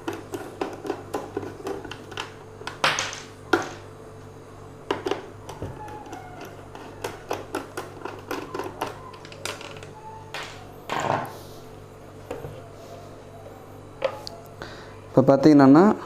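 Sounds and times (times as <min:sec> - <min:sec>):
plastic parts knocking together: 0:00.6 - 0:03.8
clicks and clatter of parts: 0:07.3 - 0:11.2.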